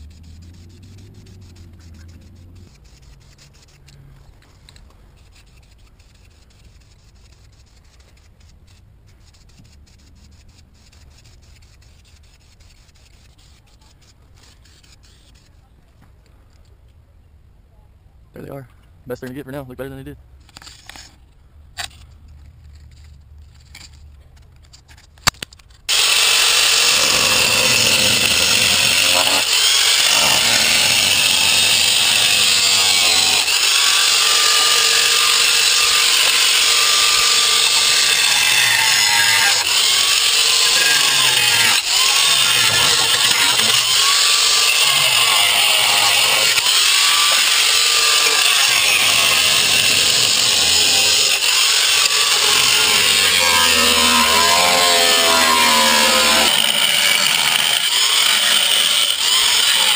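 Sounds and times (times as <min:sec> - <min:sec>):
power tool cutting metal: 0:25.9 - 0:59.9.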